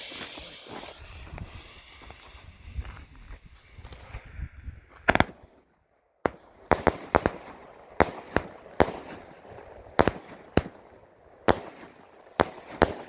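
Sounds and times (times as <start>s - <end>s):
firework cake bangs: 5.0s - 5.5s, 6.3s - 9.4s, 10.0s - 13.0s.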